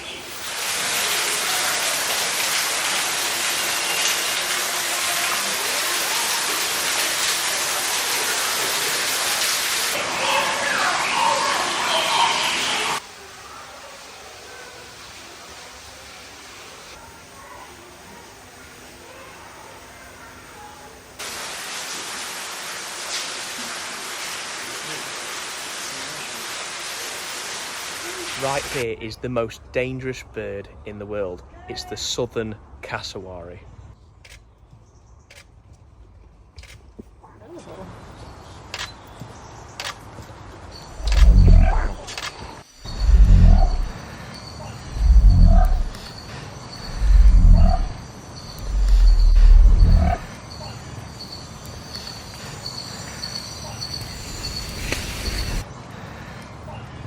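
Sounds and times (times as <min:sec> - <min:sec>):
falling water rushing hiss: 0:00.0 - 0:28.9, 0:41.0 - 0:50.4, 0:52.0 - 0:55.7.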